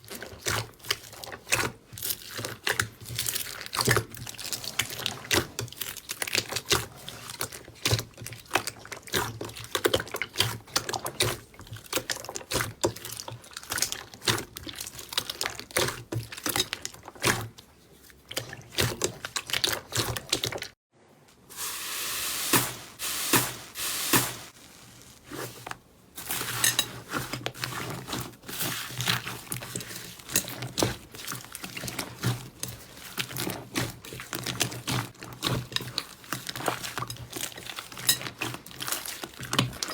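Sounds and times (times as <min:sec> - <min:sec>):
brief hissing: 0:21.5 - 0:25.2.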